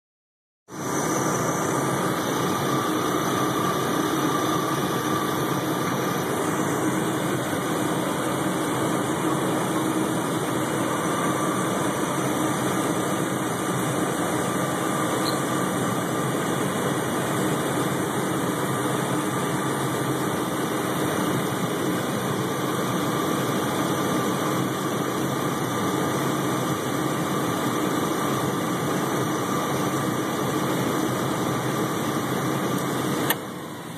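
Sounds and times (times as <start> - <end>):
alternator high-pitched whine: 0.7 - 33.9
car engine idling: 0.7 - 33.9.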